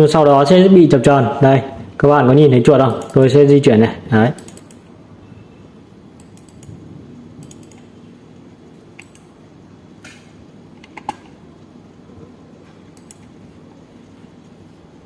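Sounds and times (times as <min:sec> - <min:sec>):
faint steady background noise: 0:00.0 - 0:15.0
computer mouse clicks: 0:06.2 - 0:06.8, 0:07.4 - 0:07.9, 0:09.0 - 0:09.3, 0:12.9 - 0:13.4.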